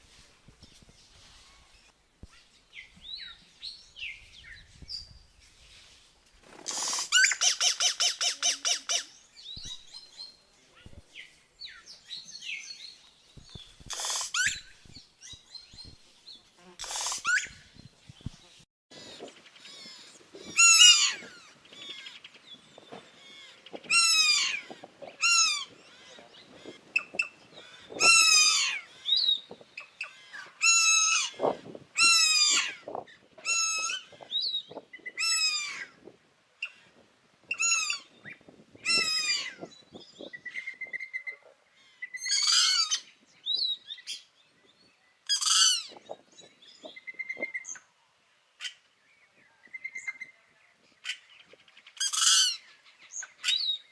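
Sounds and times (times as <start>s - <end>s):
bird calls sweeping down: 13.5s - 14.8s, 16.8s - 17.6s.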